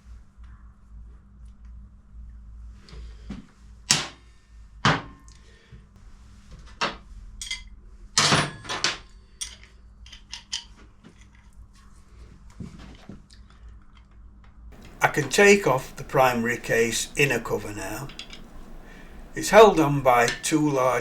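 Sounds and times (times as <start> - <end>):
hand tools and metal parts clinking: 14.8 - 21.0.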